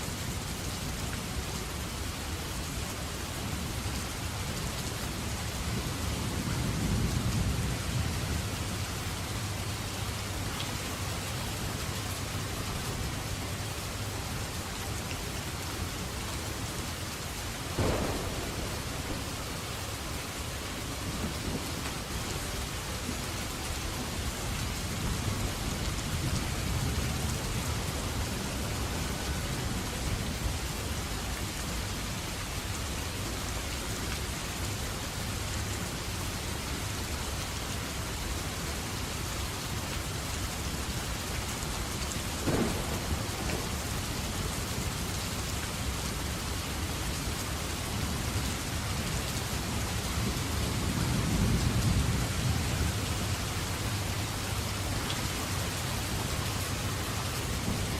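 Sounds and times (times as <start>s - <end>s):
steady rainfall: 0.0s - 57.9s
sharp thunder crack: 17.8s - 20.4s, 42.4s - 43.7s
rolling thunder: 17.8s - 22.1s, 42.3s - 44.4s.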